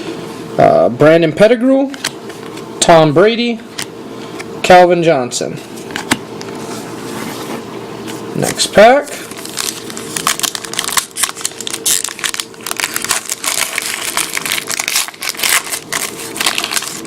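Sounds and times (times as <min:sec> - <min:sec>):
cards being pulled out: 0:06.0 - 0:17.0
wrapper crinkling: 0:09.2 - 0:17.0.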